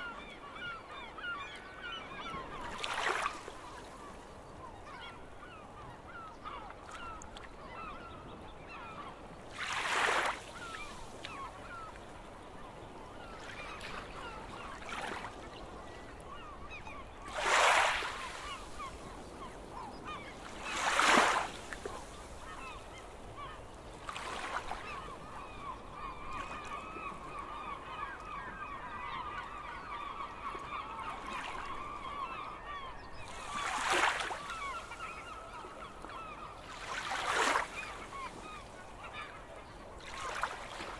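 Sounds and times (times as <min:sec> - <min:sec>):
gulls calling: 0:16.2 - 0:40.9.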